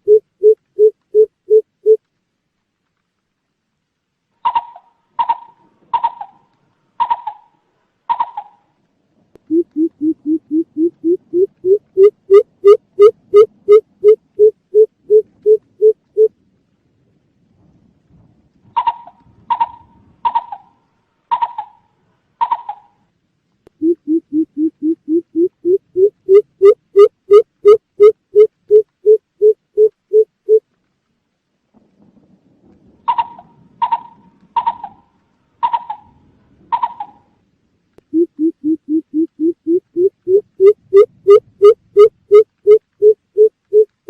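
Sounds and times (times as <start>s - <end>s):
bird stuttered calls: 4.4s - 6.4s, 7.0s - 7.5s, 8.1s - 8.6s, 9.5s - 16.3s, 18.8s - 20.7s, 21.3s - 21.8s, 22.4s - 22.9s, 23.8s - 30.6s, 33.1s - 35.0s, 35.6s - 36.1s, 36.7s - 37.2s, 38.1s - 43.9s.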